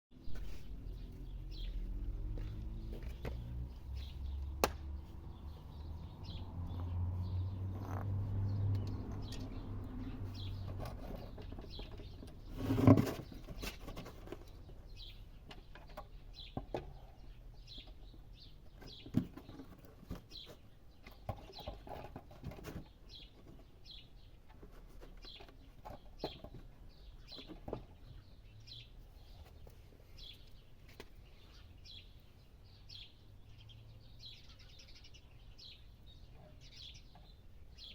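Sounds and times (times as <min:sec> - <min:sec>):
small bird chirping: 0:22.8 - 0:37.9.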